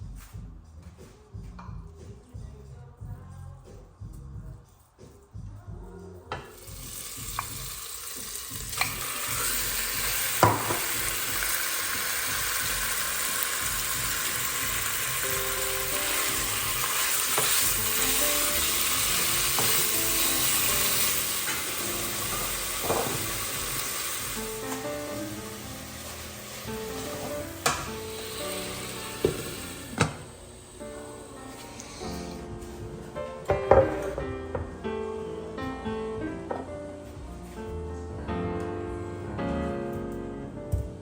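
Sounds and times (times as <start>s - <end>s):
food sizzling in hot oil: 6.5s - 32.1s
utensil knocking against pan: 10.4s - 11.2s, 27.1s - 28.0s.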